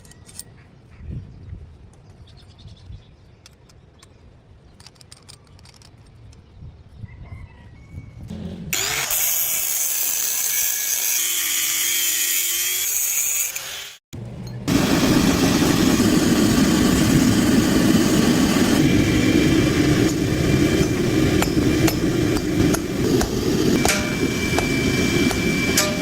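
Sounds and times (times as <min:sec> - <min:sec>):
grinder hissing on steel: 0:08.7 - 0:14.0.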